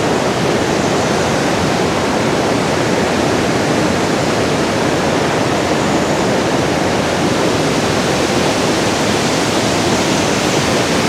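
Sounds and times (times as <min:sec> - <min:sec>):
waterfall roaring: 0:05.9 - 0:11.0.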